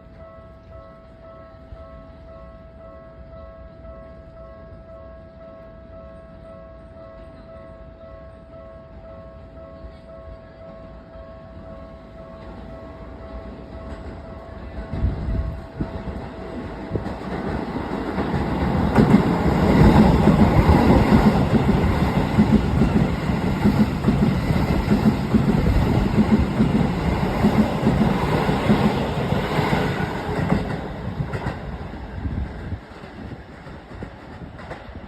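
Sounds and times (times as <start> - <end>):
train wheels clattering on rails: 12.4 - 35.0.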